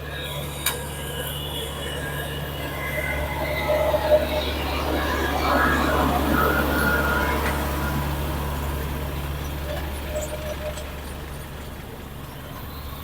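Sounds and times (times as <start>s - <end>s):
vehicle engine passing: 0.0s - 13.0s.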